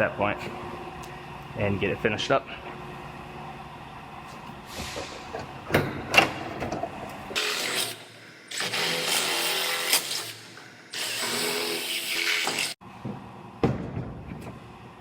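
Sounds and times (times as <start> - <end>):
drill drilling through aluminum: 7.4 - 12.8.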